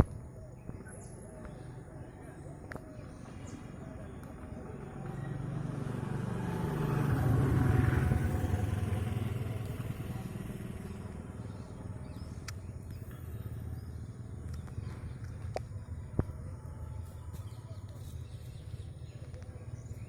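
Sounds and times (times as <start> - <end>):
vehicle engine passing by: 3.7 - 16.2.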